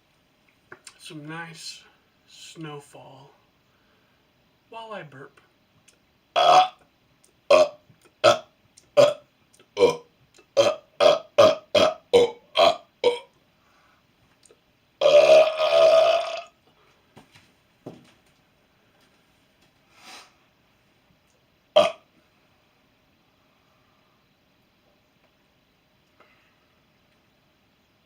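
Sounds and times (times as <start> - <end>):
person burping: 6.4 - 6.8, 7.5 - 9.2, 9.8 - 13.3, 15.0 - 16.6, 21.8 - 22.0.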